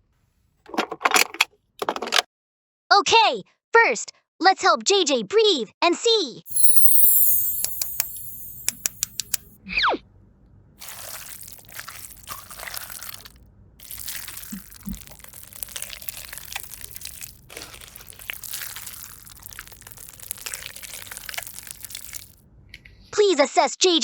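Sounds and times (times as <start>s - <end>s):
falling whistle sound effect: 6.5s - 9.4s
slime crunchy crackling: 10.8s - 22.3s.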